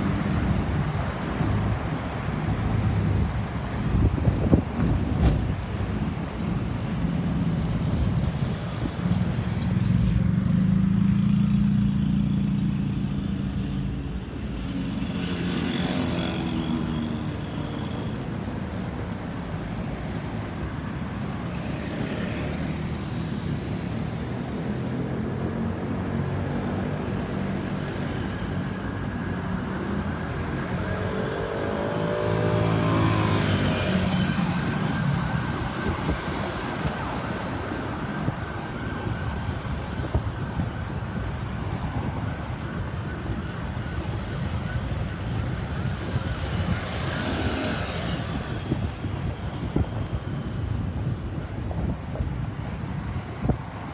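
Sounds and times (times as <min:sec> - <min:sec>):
traffic noise: 0:00.0 - 0:53.9
emergency siren passing: 0:24.6 - 0:51.2.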